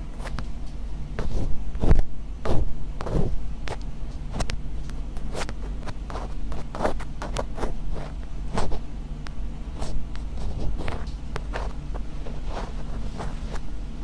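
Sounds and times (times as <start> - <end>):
steady low hum: 0.0 - 14.0
scratching strokes: 1.2 - 3.4, 5.2 - 8.9, 9.8 - 13.7.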